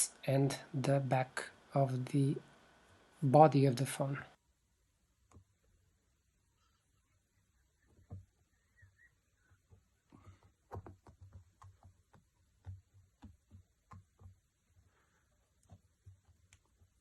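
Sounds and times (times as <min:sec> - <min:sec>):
hands tapping on phone: 0:09.6 - 0:14.6.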